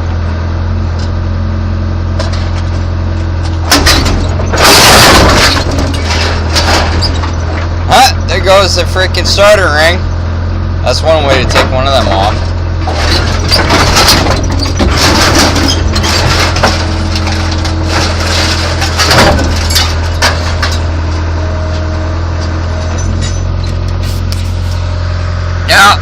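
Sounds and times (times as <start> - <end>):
excavator diesel engine running: 0.0 - 26.0
metal clanks and scrapes: 2.2 - 8.0, 11.2 - 21.0, 21.6 - 24.9.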